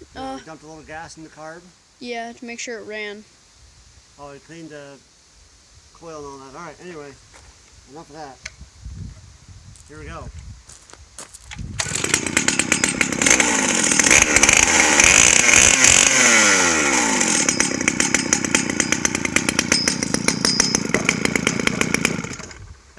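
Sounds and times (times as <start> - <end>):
chainsaw revving and idling: 11.8 - 22.8.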